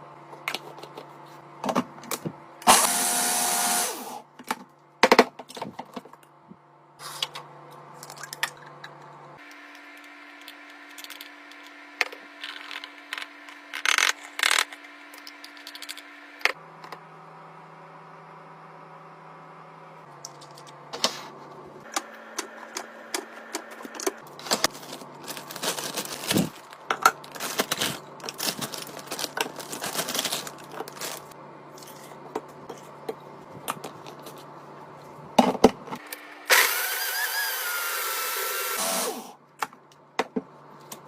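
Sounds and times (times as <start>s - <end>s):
electric motor whining: 2.7s - 4.2s, 36.4s - 39.4s.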